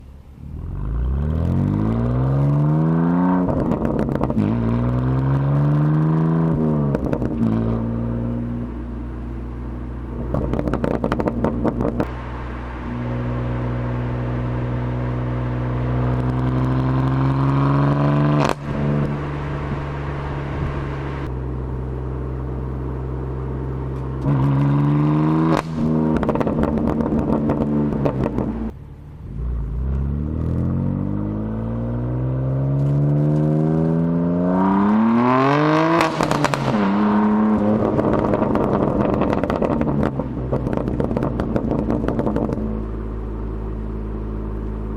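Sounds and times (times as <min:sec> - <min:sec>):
car engine revving: 0:00.3 - 0:44.9
exhaust crackles and pops: 0:03.4 - 0:07.8, 0:10.1 - 0:21.6, 0:23.8 - 0:28.8, 0:35.9 - 0:44.0.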